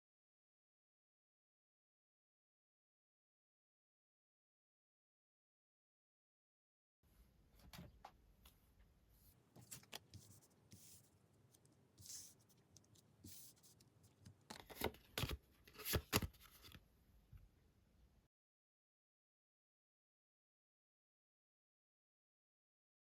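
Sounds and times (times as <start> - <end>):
cards rustling and sliding: 9.5 - 16.8
card taps and snaps: 14.2 - 16.5.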